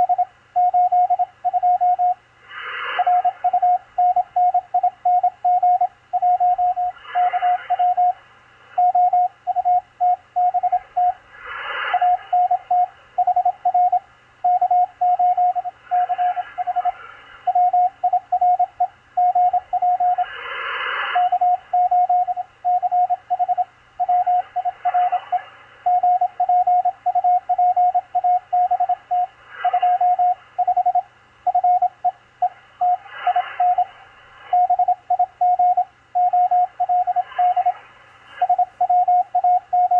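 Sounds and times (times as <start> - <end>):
morse code tone: 0.0 - 2.2, 3.0 - 8.2, 8.8 - 11.2, 11.9 - 20.3, 21.1 - 33.9, 34.5 - 39.9
radio receiver hiss: 2.2 - 4.4, 5.9 - 27.2, 28.2 - 39.9
radio static: 6.8 - 8.2, 15.6 - 17.6, 36.6 - 39.6.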